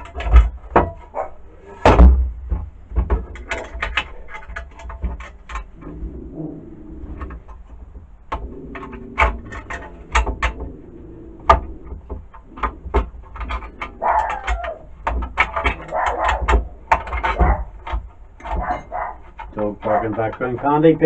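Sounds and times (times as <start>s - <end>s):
dog barking: 1.1s - 1.4s, 14.0s - 14.8s, 15.8s - 16.6s, 17.3s - 17.8s, 18.5s - 20.2s
metal parts clinking and knocking: 1.9s - 5.9s, 11.4s - 21.0s.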